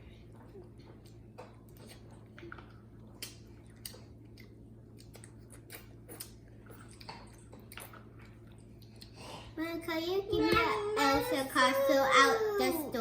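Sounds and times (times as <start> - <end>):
low steady hum: 0.0 - 13.0
chewing and mouth smacks: 0.2 - 9.2.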